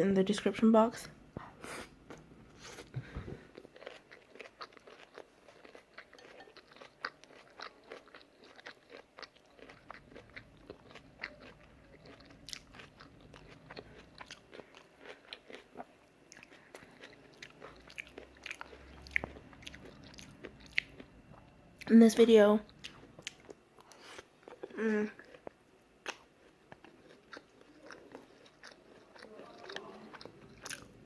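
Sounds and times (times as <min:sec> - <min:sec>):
chewing and crunching food: 0:02.1 - 0:21.9, 0:22.6 - 0:31.0.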